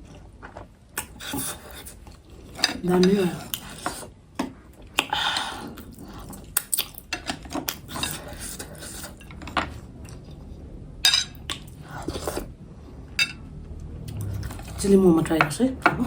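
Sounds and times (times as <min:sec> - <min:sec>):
cutlery clinking on dishes: 0:11.1 - 0:11.6, 0:13.2 - 0:13.4.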